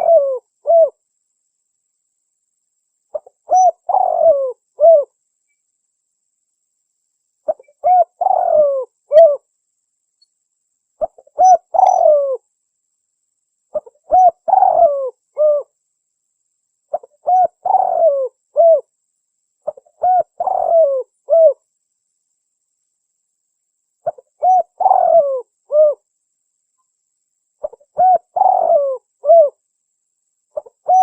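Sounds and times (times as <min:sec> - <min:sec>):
dove cooing: 0:00.0 - 0:01.0, 0:03.1 - 0:05.1, 0:07.5 - 0:09.4, 0:11.0 - 0:12.4, 0:13.7 - 0:15.7, 0:16.9 - 0:18.9, 0:19.6 - 0:21.6, 0:24.0 - 0:26.0, 0:27.6 - 0:29.6, 0:30.6 - 0:31.0.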